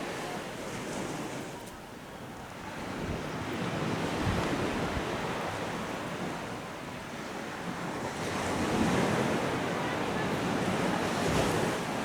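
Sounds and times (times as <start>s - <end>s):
sea surf breaking on shore: 7.2s - 12.0s.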